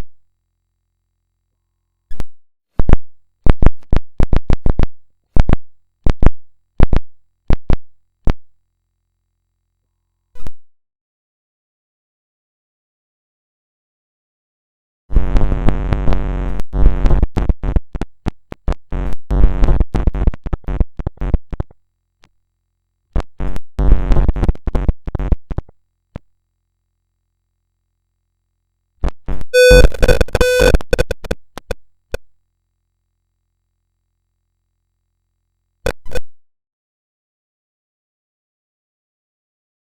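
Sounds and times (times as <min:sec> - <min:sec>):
distorted glitchy electronic buzz: 0:02.8 - 0:08.5, 0:15.1 - 0:21.8, 0:23.2 - 0:25.8, 0:29.0 - 0:32.2, 0:35.9 - 0:36.3.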